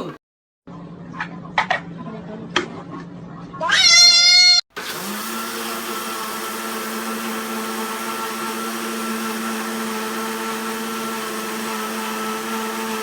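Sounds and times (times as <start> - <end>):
blender running: 4.7 - 13.0.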